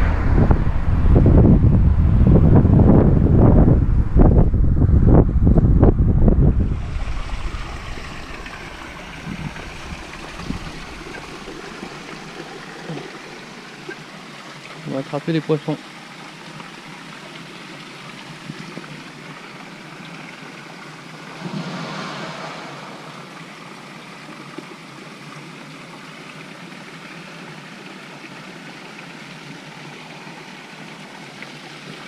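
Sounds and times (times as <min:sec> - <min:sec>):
louder rush of water: 0:00.0 - 0:03.6, 0:06.3 - 0:32.0
stream water running: 0:06.5 - 0:32.0.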